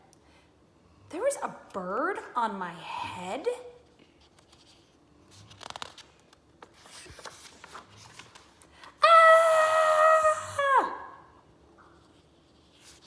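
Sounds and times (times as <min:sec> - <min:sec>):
book pages rustling: 0:03.8 - 0:09.0, 0:11.9 - 0:13.0
woman screaming: 0:09.0 - 0:11.3.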